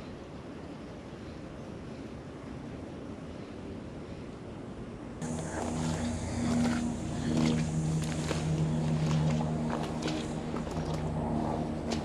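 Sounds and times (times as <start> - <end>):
low motor hum: 5.2 - 12.0.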